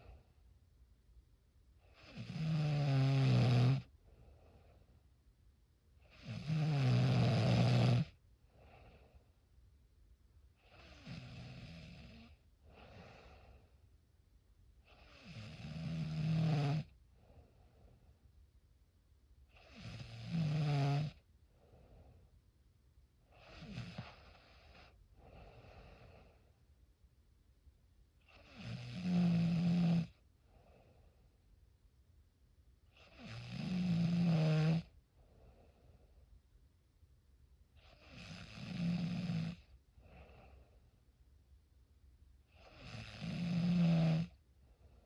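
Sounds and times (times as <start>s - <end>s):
quiet breath: 0.0s - 0.6s, 3.8s - 5.3s, 7.2s - 9.8s, 10.4s - 14.1s, 14.8s - 18.5s, 19.4s - 26.8s, 28.2s - 31.6s, 34.2s - 36.6s, 37.7s - 41.4s, 42.4s - 45.0s
person snoring: 1.9s - 3.9s, 6.1s - 8.1s, 14.9s - 16.9s, 19.6s - 21.2s, 28.4s - 30.2s, 33.1s - 34.9s, 38.0s - 40.3s, 42.6s - 44.4s.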